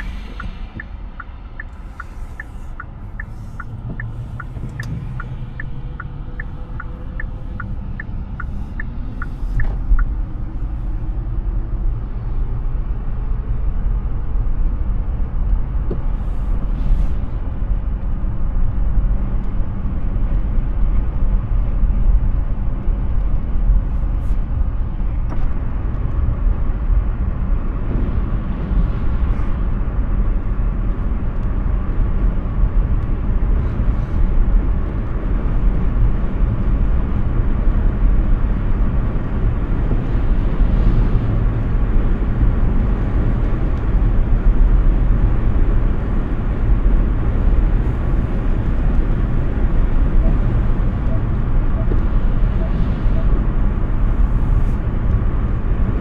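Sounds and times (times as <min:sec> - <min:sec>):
turn signal ticking: 0:00.0 - 0:10.8, 0:47.5 - 0:54.0
road and tyre rumble: 0:00.0 - 0:56.0.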